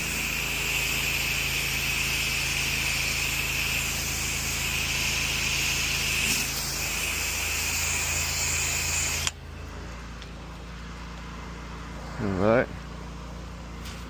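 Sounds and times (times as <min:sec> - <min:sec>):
pressure washer spraying water: 0:00.0 - 0:09.4
motor humming: 0:00.0 - 0:14.0.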